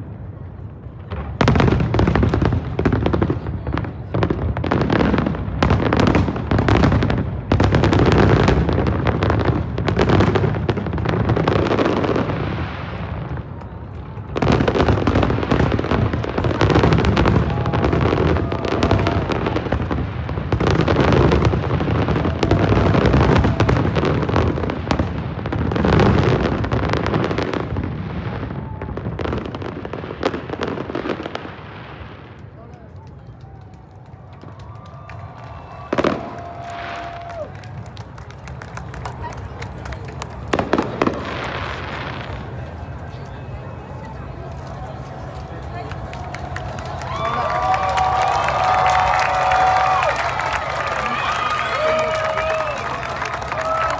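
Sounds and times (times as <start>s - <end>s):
fireworks booming and crackling: 0.0s - 53.9s.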